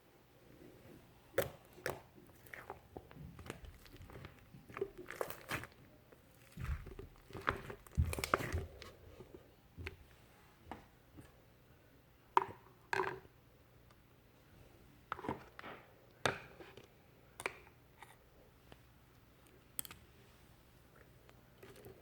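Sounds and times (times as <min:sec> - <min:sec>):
slime squishing by hand: 0:01.3 - 0:10.1.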